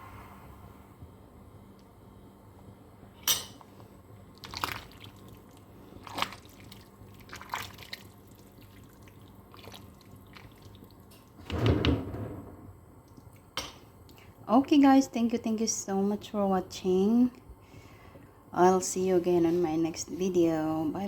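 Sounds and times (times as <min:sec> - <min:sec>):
pot and utensils clinking: 0:03.2 - 0:03.6.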